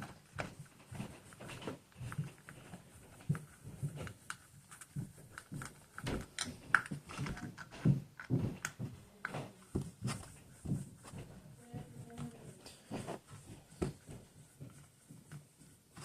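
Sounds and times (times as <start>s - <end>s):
plastic parts handled: 0.0s - 11.3s.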